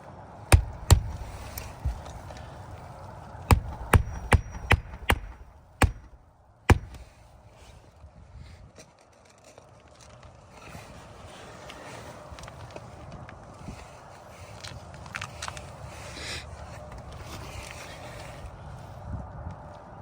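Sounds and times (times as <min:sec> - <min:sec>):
hammer striking roofing nail: 0:00.5 - 0:02.2, 0:03.5 - 0:07.2.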